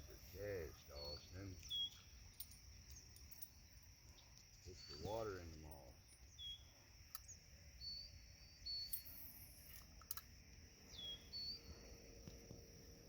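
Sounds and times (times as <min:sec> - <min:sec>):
high-pitched insect chorus: 0:00.0 - 0:13.0
whistled bird notes: 0:00.8 - 0:02.2, 0:04.6 - 0:05.4, 0:06.3 - 0:09.3, 0:10.9 - 0:11.8.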